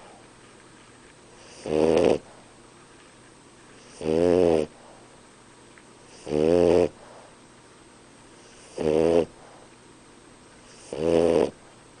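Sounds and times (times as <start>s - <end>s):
dog snoring: 1.4s - 2.4s, 3.8s - 4.8s, 6.1s - 7.0s, 8.4s - 9.6s, 10.6s - 11.6s.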